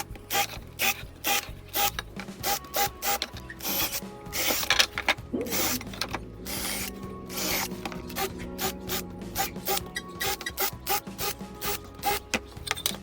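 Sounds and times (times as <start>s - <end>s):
power drill boring into plywood: 0.0s - 4.7s
background music: 0.0s - 13.0s.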